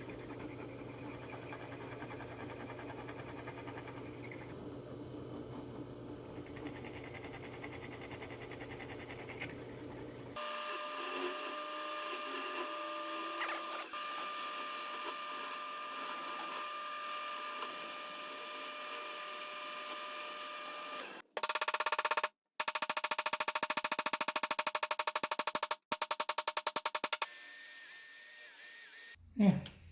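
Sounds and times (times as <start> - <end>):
power tool low hum: 0.0 - 21.2, 27.2 - 29.2.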